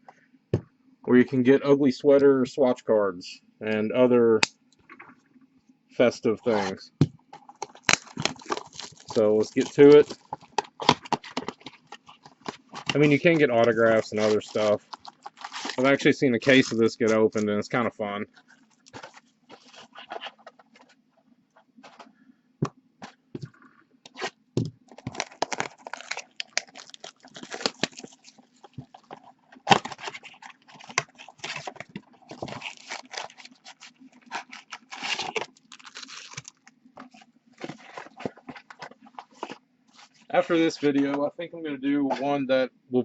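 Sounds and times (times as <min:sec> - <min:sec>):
plastic wrapping crinkling: 0:06.5 - 0:21.0, 0:24.2 - 0:40.8.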